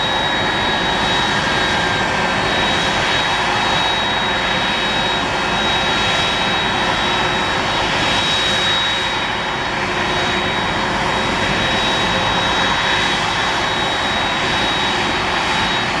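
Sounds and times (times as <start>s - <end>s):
jet engines with high whine: 0.0s - 16.0s.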